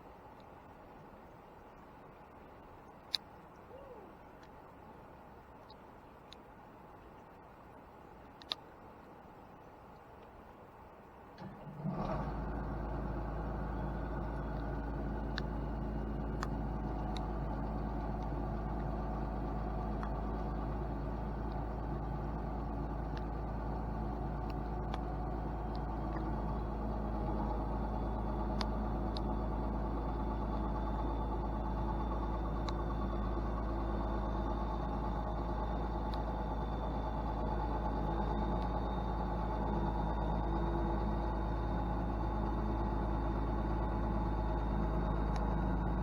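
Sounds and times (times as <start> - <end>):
faint high whine: 0.0 - 46.0
scattered clicks: 8.3 - 8.7, 14.1 - 15.6, 16.2 - 21.7, 45.0 - 46.0
diesel engine running: 11.4 - 46.0.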